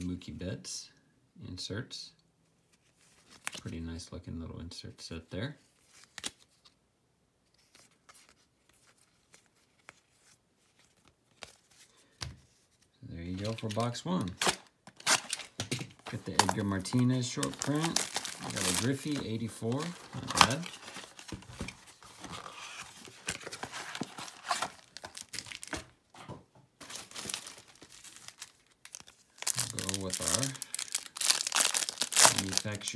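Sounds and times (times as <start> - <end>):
cards rustling and ticking: 7.5 - 26.0, 26.8 - 32.9
wrapper crinkling and tearing: 13.4 - 25.9, 26.8 - 32.9.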